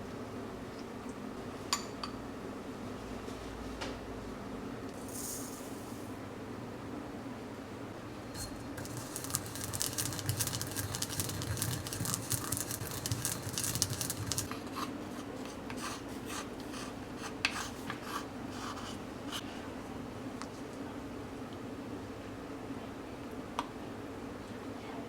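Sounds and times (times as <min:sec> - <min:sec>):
rapid scratching and clicking: 0:08.4 - 0:16.5.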